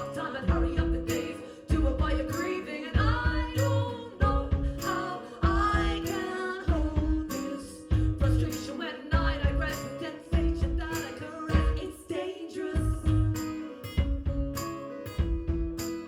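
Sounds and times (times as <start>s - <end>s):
drum beat: 0.0s - 2.4s, 3.0s - 12.0s, 12.8s - 15.9s
person singing: 0.0s - 13.7s
live band playing: 12.8s - 16.0s.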